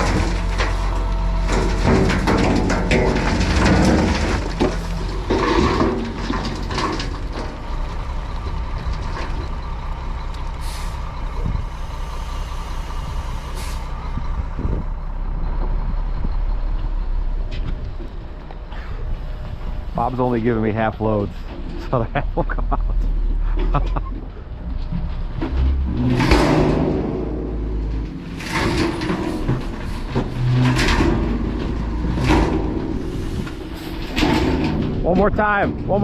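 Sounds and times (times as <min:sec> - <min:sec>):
clanking and rattling: 0:00.0 - 0:11.8, 0:21.2 - 0:36.0
diesel engines running: 0:00.0 - 0:36.0
air brake hisses: 0:10.6 - 0:11.0, 0:11.8 - 0:13.9.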